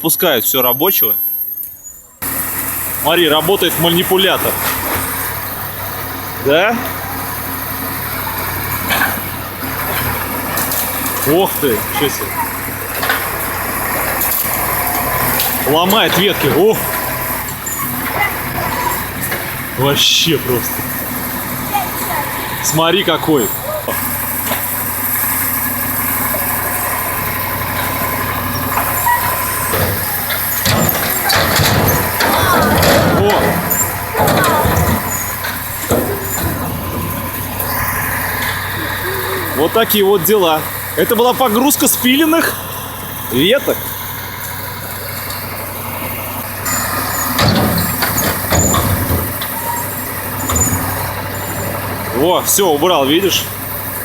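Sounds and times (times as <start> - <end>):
hydraulic crane loading branches: 0.0 - 54.0
truck diesel engine running: 0.0 - 54.0
short high squeaks: 0.2 - 2.6, 14.0 - 19.4, 23.3 - 32.9, 33.5 - 39.6, 46.6 - 51.9.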